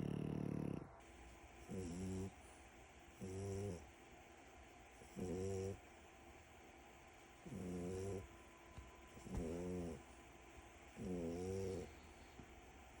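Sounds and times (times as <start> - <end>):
puppy snoring: 0.0 - 1.0, 1.6 - 4.0, 4.9 - 5.9, 7.4 - 8.3, 9.1 - 10.2, 10.9 - 12.4.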